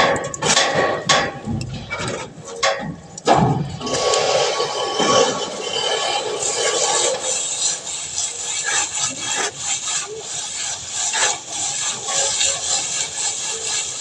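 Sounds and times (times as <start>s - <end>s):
hand tool scraping a surface: 3.8s - 14.0s.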